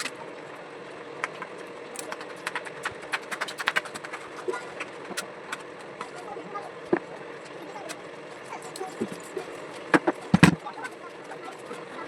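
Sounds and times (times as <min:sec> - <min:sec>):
steady hum: 0:00.0 - 0:12.0
small clicks of hard parts: 0:08.7 - 0:11.8.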